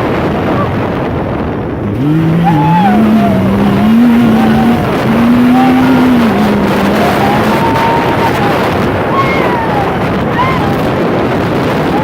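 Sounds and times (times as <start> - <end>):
wind and ground noise: 0.0 - 12.0
engine accelerating hard: 1.8 - 11.2.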